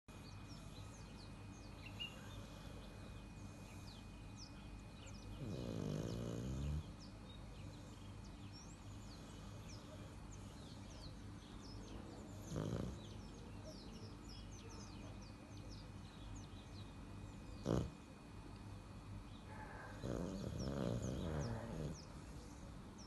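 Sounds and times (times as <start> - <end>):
small birds chirping: 0.1 - 23.0
leopard snoring: 0.2 - 7.1, 8.6 - 13.8, 17.5 - 18.1, 19.5 - 23.0.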